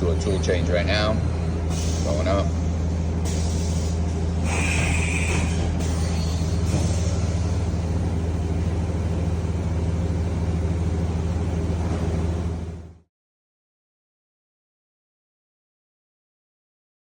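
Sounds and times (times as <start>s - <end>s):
low machine hum: 0.0s - 13.1s
brief hissing: 1.7s - 2.2s, 3.3s - 7.2s.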